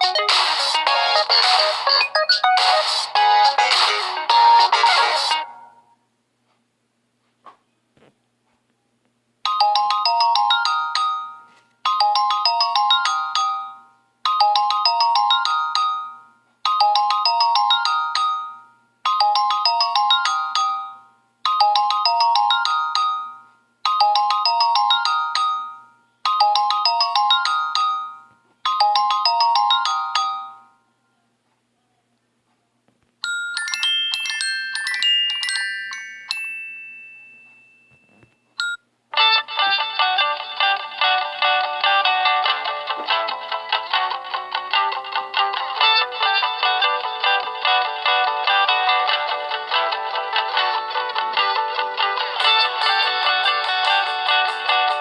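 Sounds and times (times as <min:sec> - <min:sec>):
phone ringtone melody: 0:00.0 - 0:06.0, 0:09.5 - 0:30.8, 0:33.2 - 0:38.8, 0:45.8 - 0:55.0.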